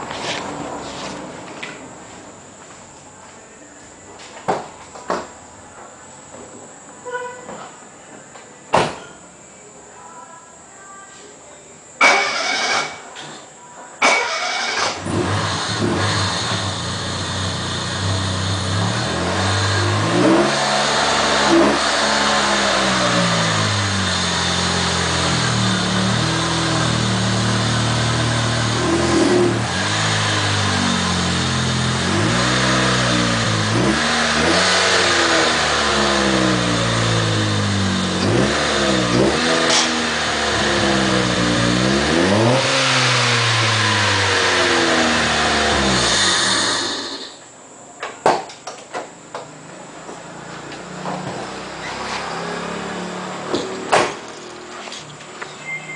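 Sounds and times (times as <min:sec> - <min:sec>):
car engine revving loudly: 0:14.0 - 0:47.3, 0:51.0 - 0:54.2.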